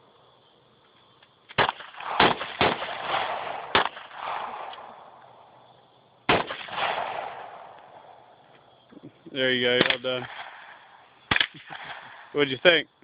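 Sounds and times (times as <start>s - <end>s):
rifle shots echoing: 1.5s - 5.4s, 6.2s - 8.4s, 9.6s - 12.4s.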